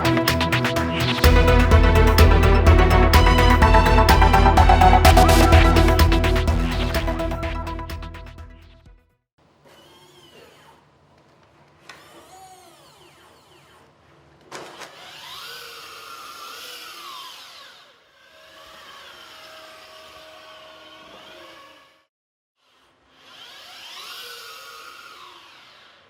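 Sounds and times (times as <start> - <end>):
small motor whirring: 14.7 - 26.0.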